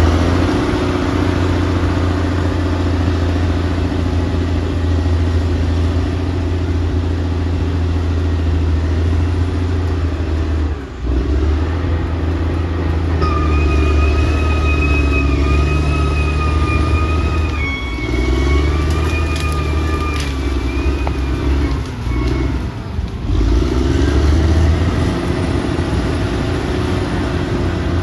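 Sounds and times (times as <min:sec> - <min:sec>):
bulldozer diesel engine running: 0:00.0 - 0:28.0
high-pitched whine: 0:13.2 - 0:22.6.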